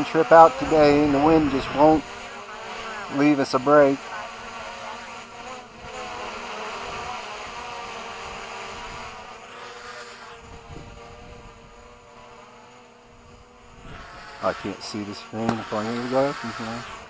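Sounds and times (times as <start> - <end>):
gusty wind: 0.0 - 2.3, 10.3 - 12.0, 13.1 - 14.4
drone propellers whining: 0.0 - 17.0.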